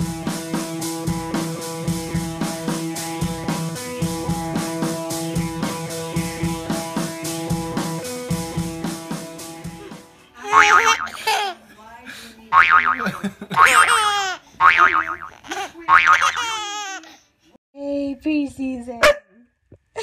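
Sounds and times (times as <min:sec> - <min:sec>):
regular drum strokes: 0:00.0 - 0:10.2.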